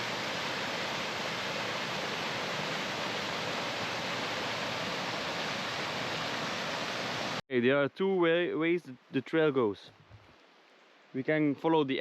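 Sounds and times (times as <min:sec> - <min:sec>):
flowing stream water: 0:00.0 - 0:07.4.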